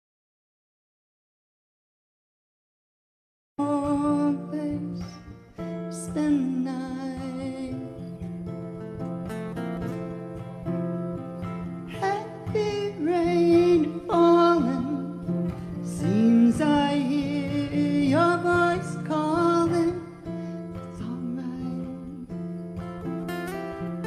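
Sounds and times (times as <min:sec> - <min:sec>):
woman singing: 0:03.6 - 0:08.6, 0:11.9 - 0:22.6
acoustic guitar: 0:03.6 - 0:24.0.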